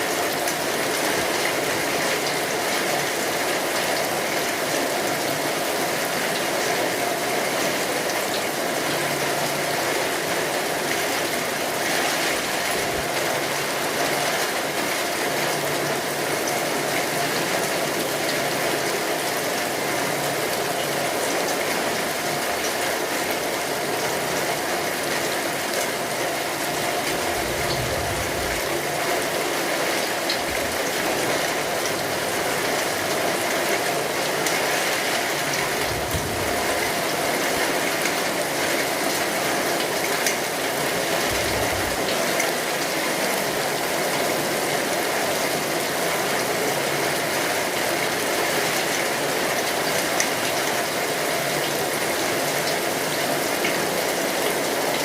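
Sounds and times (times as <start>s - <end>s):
steady rainfall: 0.0s - 55.0s
low rumbles: 27.0s - 29.1s, 35.8s - 37.0s, 41.3s - 42.1s.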